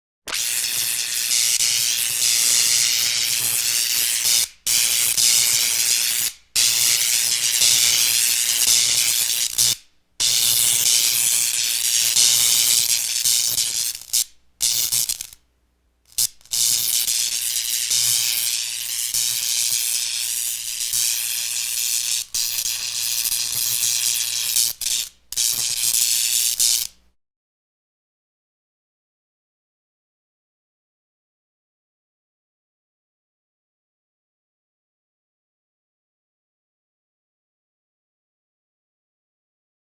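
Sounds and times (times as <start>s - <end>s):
electric arc hiss: 0.3s - 15.4s, 16.1s - 27.0s.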